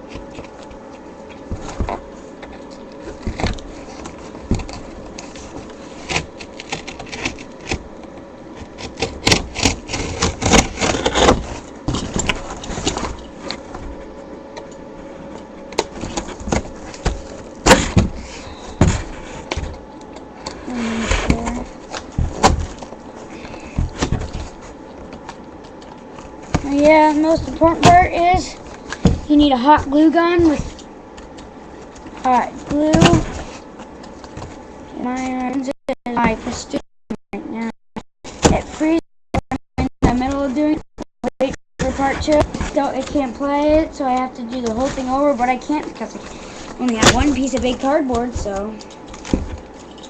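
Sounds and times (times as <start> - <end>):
cardboard knocking and scraping: 3.0 - 7.9, 8.6 - 14.0, 15.8 - 19.8, 20.7 - 30.8, 41.8 - 44.0, 44.7 - 50.0.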